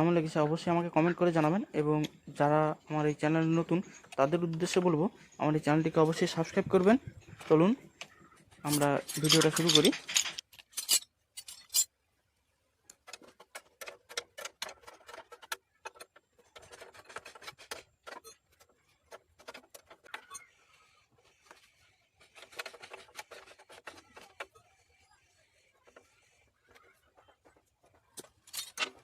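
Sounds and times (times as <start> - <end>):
metal tools clinking: 8.5 - 12.0, 13.1 - 20.6, 26.7 - 29.0.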